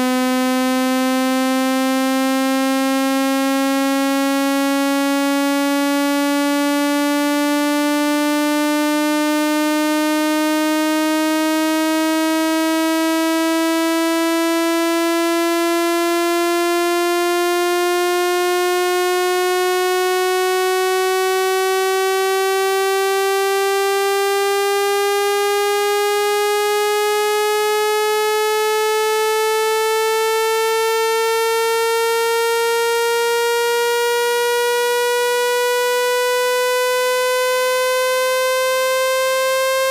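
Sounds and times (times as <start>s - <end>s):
buzzy tone rising in pitch: 17.9s - 39.9s.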